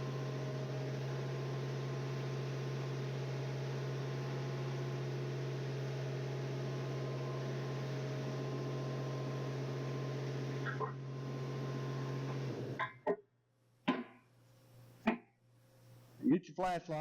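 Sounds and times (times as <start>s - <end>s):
low machine hum: 0.0s - 13.1s.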